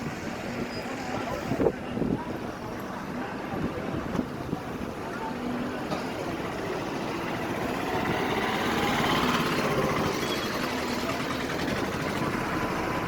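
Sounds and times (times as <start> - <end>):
vehicle engine running: 6.2 - 13.0.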